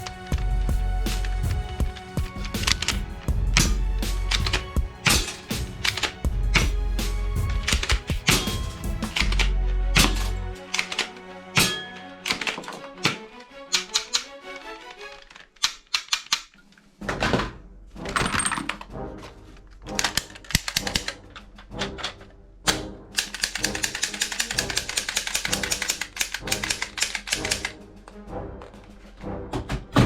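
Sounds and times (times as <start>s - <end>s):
background music: 0.0s - 30.0s
toy gun clicking: 13.8s - 14.3s, 15.0s - 16.6s, 20.0s - 21.2s, 23.2s - 27.7s.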